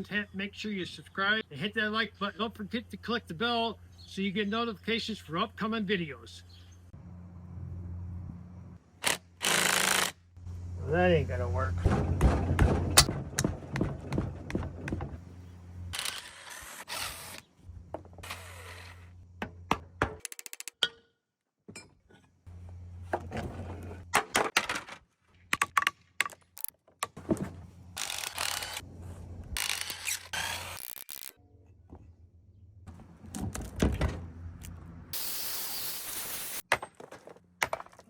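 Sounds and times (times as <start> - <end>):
power tool bursts: 9.0 - 10.2, 35.2 - 36.6
low steady hum: 10.4 - 16.0
metal clanks and knocks: 11.8 - 15.2.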